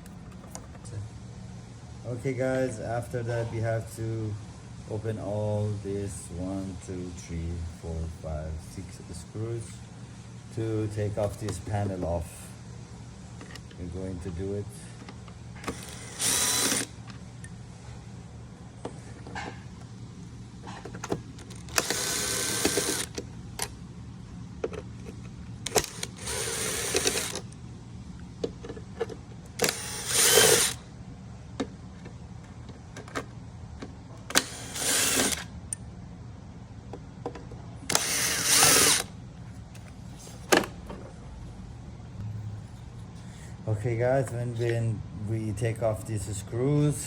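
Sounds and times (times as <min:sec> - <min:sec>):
power drill driving screws: 0:15.6 - 0:17.0, 0:21.6 - 0:23.2, 0:25.7 - 0:27.5, 0:29.6 - 0:30.8, 0:34.3 - 0:35.5, 0:37.9 - 0:39.1.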